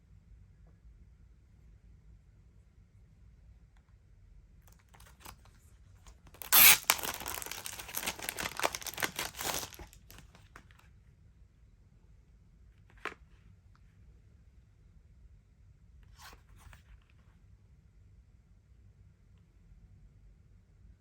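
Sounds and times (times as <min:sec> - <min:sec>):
packaging handling clicks: 0:06.4 - 0:10.3
packaging tearing and crinkling: 0:06.4 - 0:10.4.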